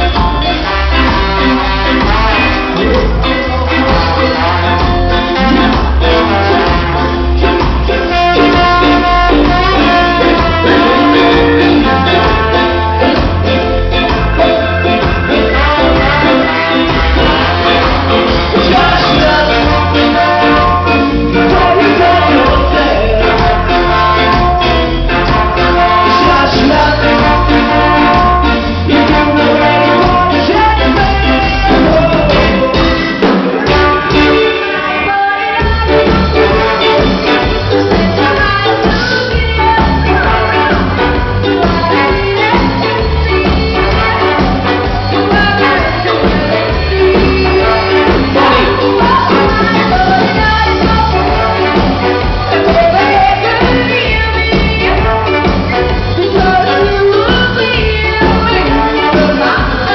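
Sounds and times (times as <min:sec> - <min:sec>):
heavy bass line: 0:00.0 - 0:35.0
live band playing: 0:00.0 - 0:59.9
percussion: 0:00.0 - 0:59.9
person singing: 0:00.0 - 0:59.9.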